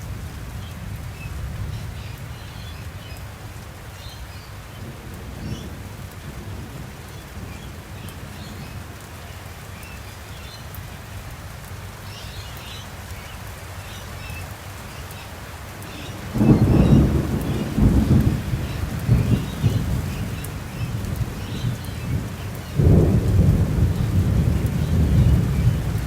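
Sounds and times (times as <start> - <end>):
rain falling: 0.0 - 26.0
thunder clap and rumble: 15.8 - 26.0.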